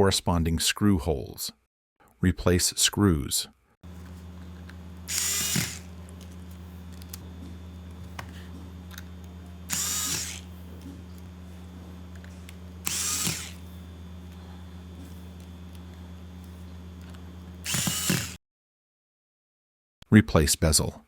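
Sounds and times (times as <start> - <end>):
steady low hum: 3.9 - 18.4
electric screwdriver whirring: 5.0 - 7.2, 8.0 - 11.2, 12.1 - 13.7, 17.5 - 18.4.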